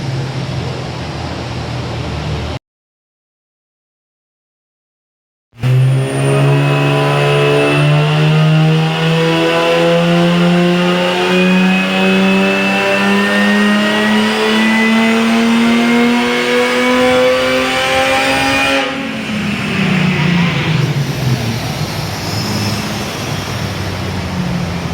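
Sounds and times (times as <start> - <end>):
car engine accelerating: 5.6 - 24.9
thin high turbo whine: 5.6 - 24.9.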